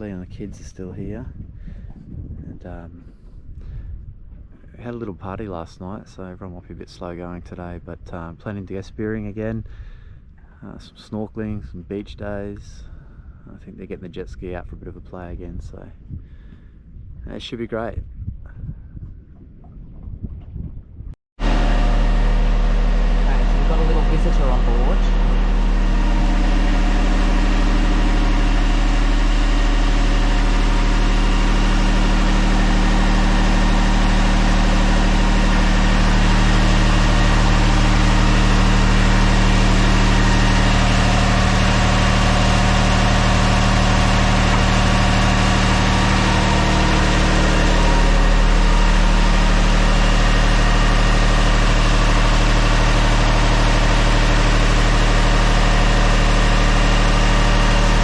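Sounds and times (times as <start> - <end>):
engine idling: 21.4 - 58.0.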